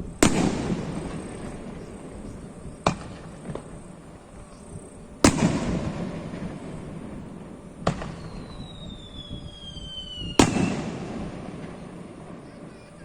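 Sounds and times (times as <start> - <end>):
fireworks bangs with echo: 0.0 - 13.0
descending firework whistle: 4.4 - 13.0.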